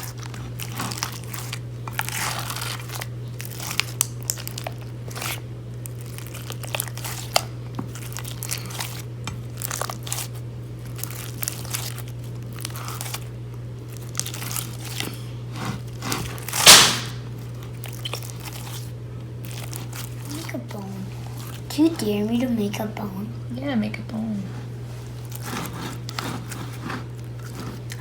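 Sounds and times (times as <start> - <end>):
slime crackling and popping: 0.0 - 13.3, 13.9 - 15.1, 16.0 - 18.8, 19.4 - 20.5
slime squish: 0.0 - 13.3, 13.9 - 21.7.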